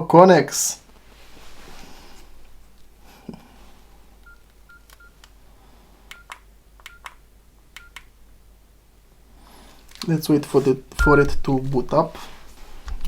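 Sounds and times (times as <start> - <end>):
phone key-tone beeps: 6.1 - 7.2, 7.8 - 8.1
button clicks: 11.0 - 11.4.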